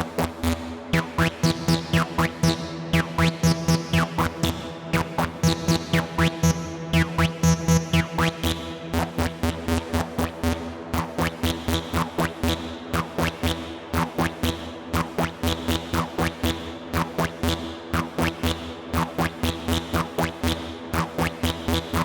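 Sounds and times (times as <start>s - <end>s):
low synth drone: 0.0s - 10.7s
fast clicky synth pulse: 1.0s - 8.6s.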